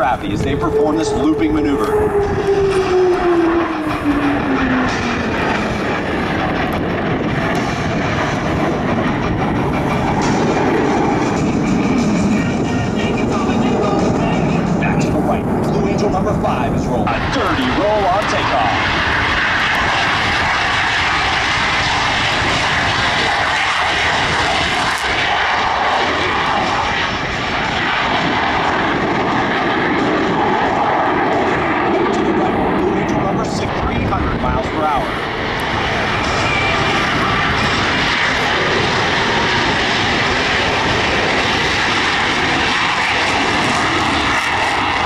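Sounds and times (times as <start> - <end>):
jet engines roaring: 0.0 - 45.0.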